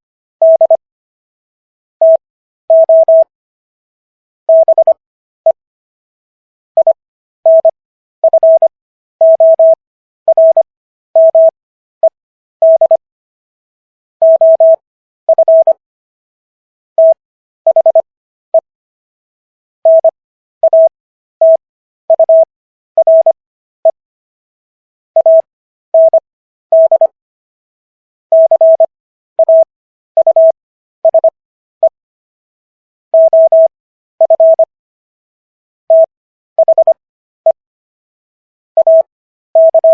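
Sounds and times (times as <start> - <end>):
morse code beeps: 0.4 - 0.8, 2.0 - 3.3, 4.5 - 5.0, 6.8 - 11.5, 12.6 - 13.0, 14.2 - 15.8, 17.0 - 18.0, 19.8 - 23.4, 25.2 - 27.2, 28.3 - 32.0, 33.2 - 34.7, 35.9 - 37.6, 38.8 - 39.9.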